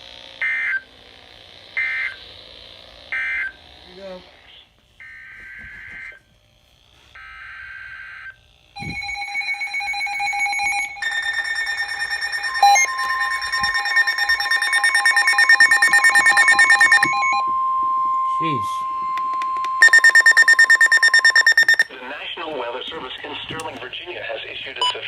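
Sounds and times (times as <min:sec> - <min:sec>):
pulsing electronic alert tones: 0:08.8 - 0:21.9
steady alert tone: 0:08.8 - 0:21.9
screeching data bursts: 0:08.8 - 0:22.0.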